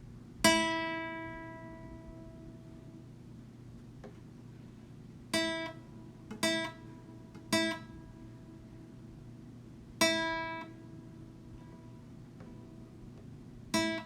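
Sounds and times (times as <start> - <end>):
guitar chord strummed: 0.4 - 3.0, 5.3 - 8.9, 10.0 - 13.0, 13.7 - 14.0.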